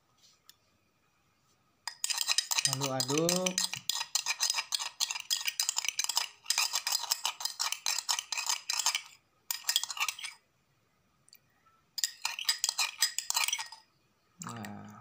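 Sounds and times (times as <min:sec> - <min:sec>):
spoon clinking in container: 0:01.9 - 0:10.4, 0:12.0 - 0:13.8.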